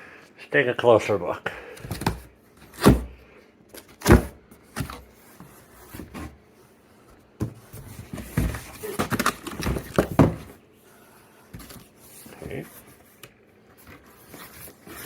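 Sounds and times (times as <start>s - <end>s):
cardboard box thump: 1.9s - 3.2s, 4.0s - 5.0s, 7.4s - 10.6s
cardboard knocking and rustling: 1.9s - 3.2s, 4.0s - 6.4s, 7.4s - 10.6s.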